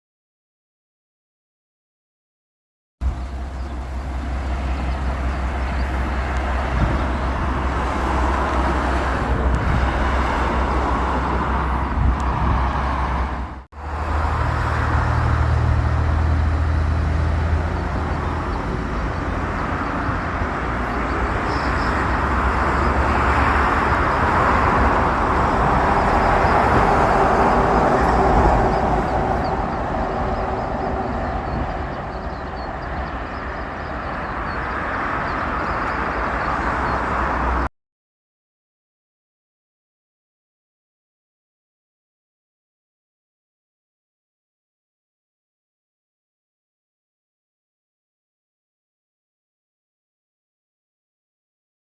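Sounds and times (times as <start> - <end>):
diesel railcar engine hum: 3.0 - 37.7
train rushing noise: 3.0 - 37.7.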